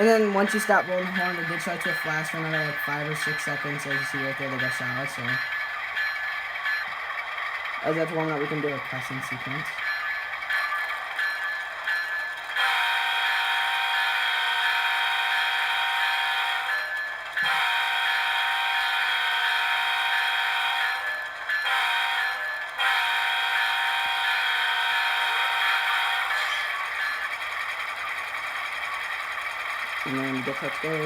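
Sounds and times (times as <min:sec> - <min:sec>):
model locomotive horn blasts: 0:12.6 - 0:26.7.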